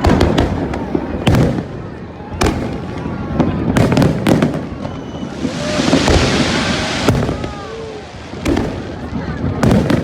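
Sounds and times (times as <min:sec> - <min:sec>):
fireworks bangs: 0:00.0 - 0:10.0
fireworks crackling hiss: 0:03.8 - 0:10.0.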